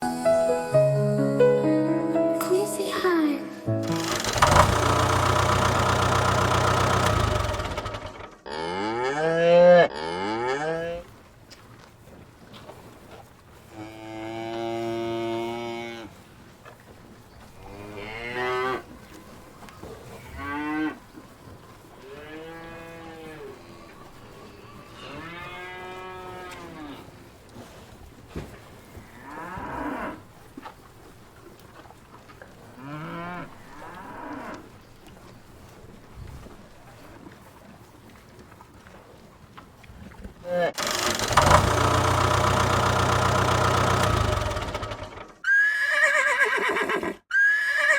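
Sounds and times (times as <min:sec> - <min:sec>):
cows mooing: 0:08.4 - 0:11.0, 0:13.7 - 0:16.2, 0:17.6 - 0:19.2, 0:20.1 - 0:21.2, 0:22.0 - 0:27.2, 0:28.9 - 0:30.3, 0:32.6 - 0:34.8.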